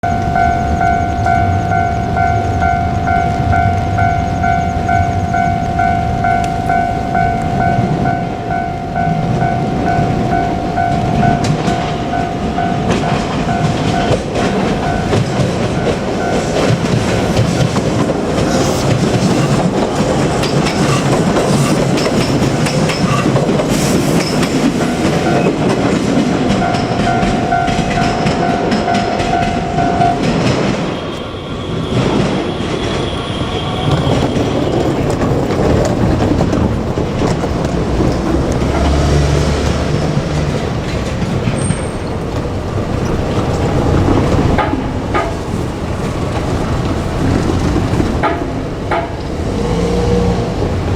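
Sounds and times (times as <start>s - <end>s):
level crossing warning bell: 0.0s - 35.4s
train wheels clattering over rail joints: 9.0s - 50.9s.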